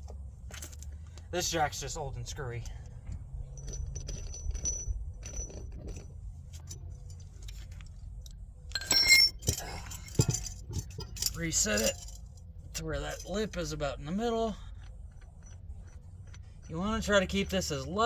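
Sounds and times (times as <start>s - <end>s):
metal jack clinking and clanking: 3.5s - 7.6s, 8.7s - 13.7s
loud ringing metal clank: 8.7s - 12.1s.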